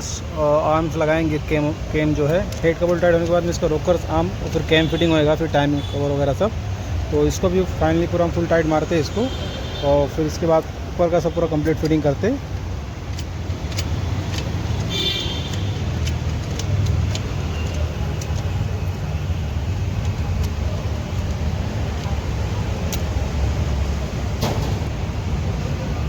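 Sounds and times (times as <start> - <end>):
metallic hand tool clicks: 13.1 - 18.6.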